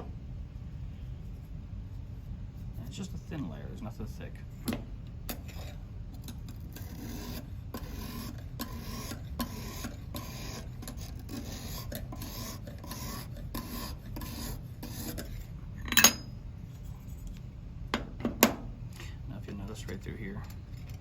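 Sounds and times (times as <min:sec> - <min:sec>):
hone rasping along knife edge: 0:05.3 - 0:16.3.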